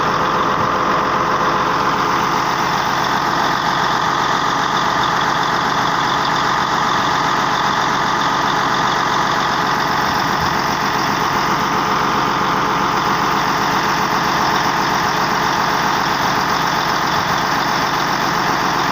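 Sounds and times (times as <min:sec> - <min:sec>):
bulldozer diesel engine running: 0:00.0 - 0:18.9.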